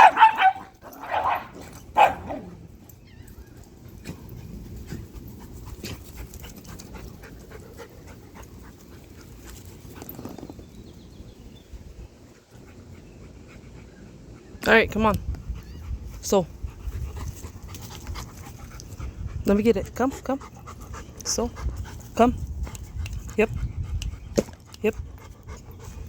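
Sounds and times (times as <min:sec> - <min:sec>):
dog barking: 0:00.0 - 0:02.5
dog panting: 0:03.9 - 0:10.2, 0:15.4 - 0:26.0.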